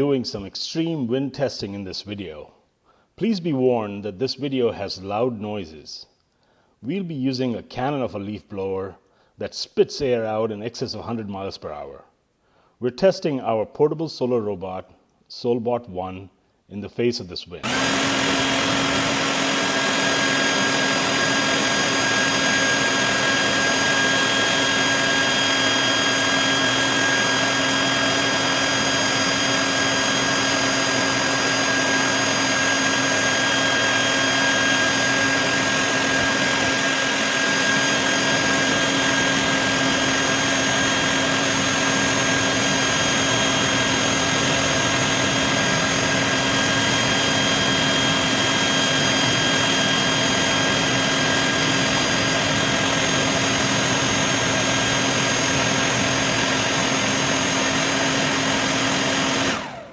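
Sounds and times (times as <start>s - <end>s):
leaf blower running: 17.6s - 59.9s.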